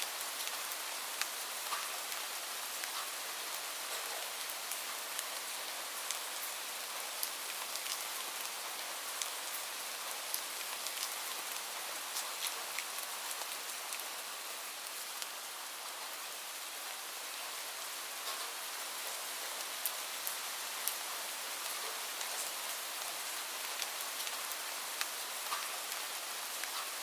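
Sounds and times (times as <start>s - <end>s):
light rain hissing: 0.0s - 27.0s
raindrop ticks: 0.4s - 2.2s, 2.8s - 3.2s, 18.2s - 19.2s, 23.8s - 26.0s, 26.6s - 27.0s.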